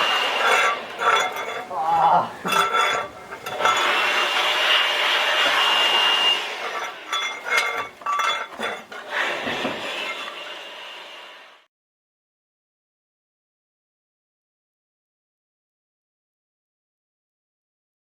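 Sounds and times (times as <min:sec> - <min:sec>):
hand tools clinking: 0:00.0 - 0:10.5
steady scraping: 0:00.0 - 0:11.4.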